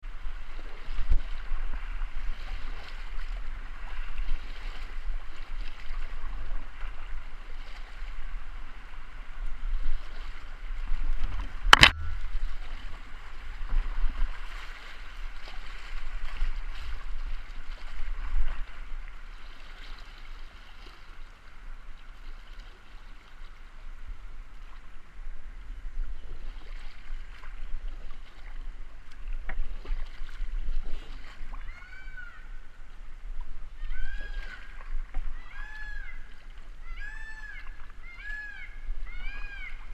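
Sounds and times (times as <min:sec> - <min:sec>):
low rumble: 0:11.6 - 0:13.0.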